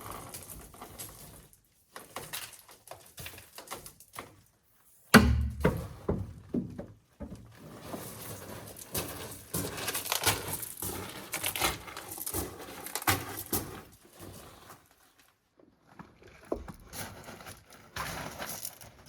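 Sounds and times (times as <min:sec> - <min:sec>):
heavy thunk: 0:05.2 - 0:06.8.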